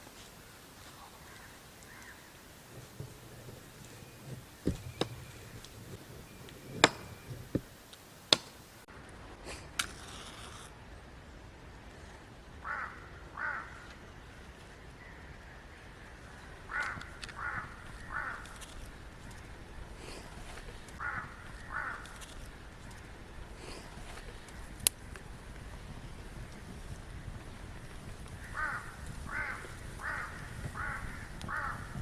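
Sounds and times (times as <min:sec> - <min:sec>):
crow cawing: 0:01.1 - 0:07.7, 0:12.6 - 0:13.8, 0:16.7 - 0:18.6, 0:21.0 - 0:22.2, 0:28.4 - 0:32.0
sharp knocks: 0:02.6 - 0:08.8.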